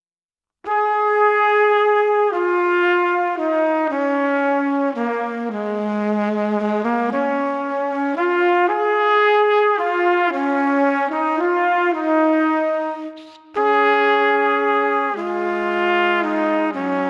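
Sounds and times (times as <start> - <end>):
slow wind instrument melody: 0.7 - 17.0.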